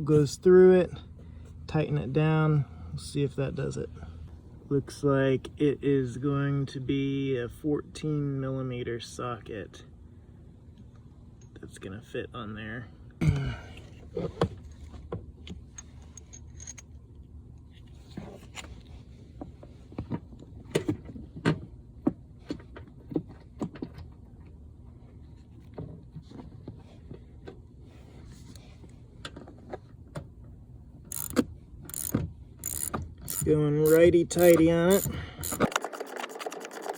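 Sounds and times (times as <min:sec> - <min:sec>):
metal clicks and scrapes of socket: 0:15.7 - 0:16.9, 0:31.1 - 0:35.7
ratchet clicks: 0:31.1 - 0:36.9.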